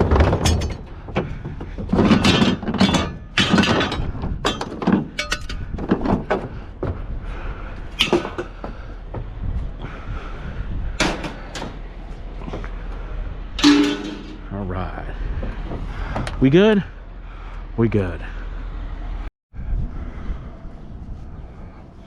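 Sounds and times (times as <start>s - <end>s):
scrap metal clanks and thuds: 0.0s - 9.7s, 10.9s - 12.8s, 13.5s - 14.5s.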